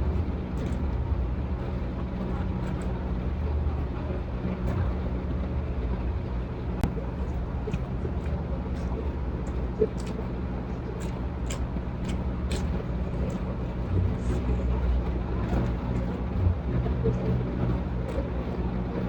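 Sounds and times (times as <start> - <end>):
low rumble: 0.0 - 19.0
mouth smacks and clicks: 0.5 - 0.9, 6.8 - 14.6
person chewing: 6.8 - 14.9.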